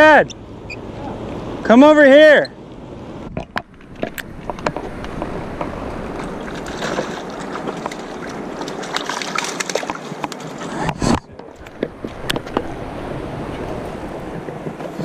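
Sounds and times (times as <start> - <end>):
sharp clicks and knocks: 3.3 - 5.8
river water rushing over rapids: 3.8 - 10.7.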